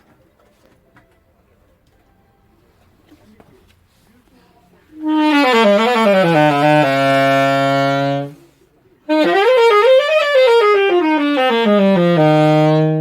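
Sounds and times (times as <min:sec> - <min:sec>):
saxophone playing: 0:05.0 - 0:08.5, 0:09.1 - 0:13.0.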